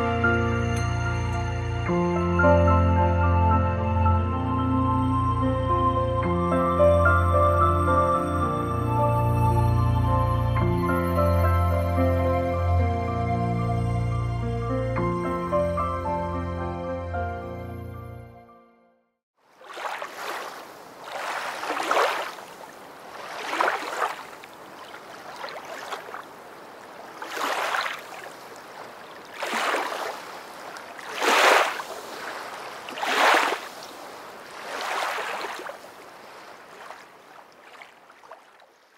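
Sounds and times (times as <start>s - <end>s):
water washing in swells: 19.4s - 38.9s.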